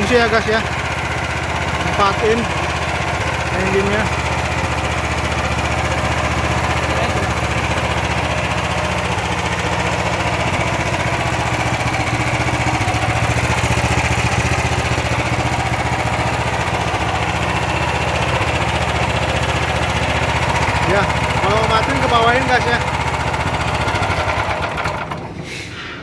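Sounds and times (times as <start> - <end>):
petrol engine running: 0.0 - 26.0.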